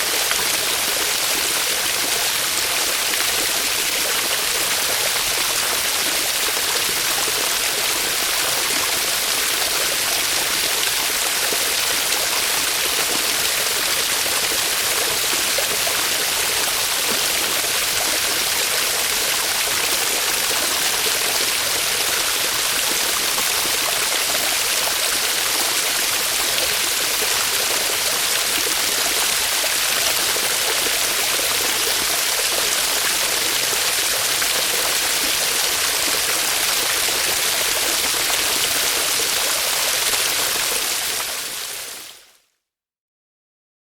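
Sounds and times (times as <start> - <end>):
small waterfall splashing: 0.0 - 42.2.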